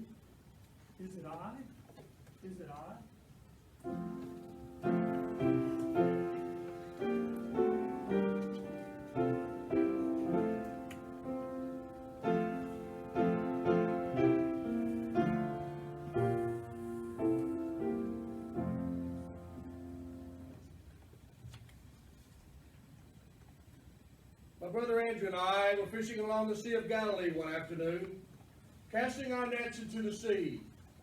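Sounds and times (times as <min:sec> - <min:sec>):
slow piano chords and melody: 0:03.8 - 0:20.9.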